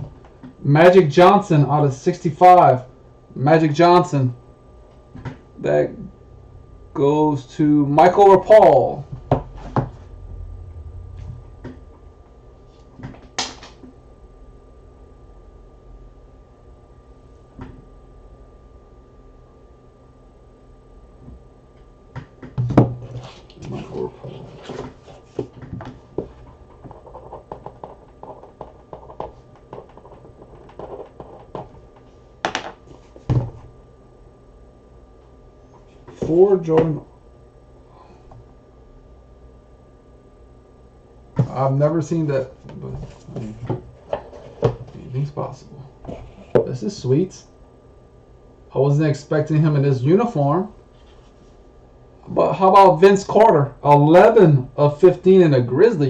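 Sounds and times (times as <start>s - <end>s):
cards and packaging rustling: 26.8s - 31.8s.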